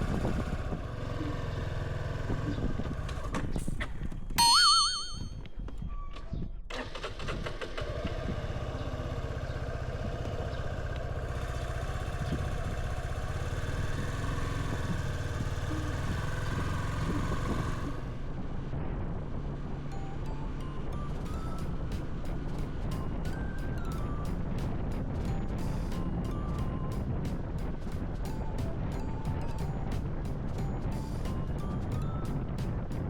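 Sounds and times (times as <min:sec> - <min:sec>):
motorcycle engine running: 0:00.0 - 0:03.4, 0:07.7 - 0:18.7.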